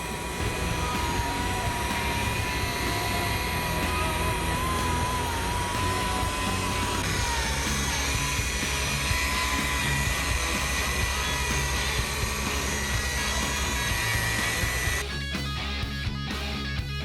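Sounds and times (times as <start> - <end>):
electric polisher whining: 0.0 - 15.0
rock guitar music: 0.0 - 17.0.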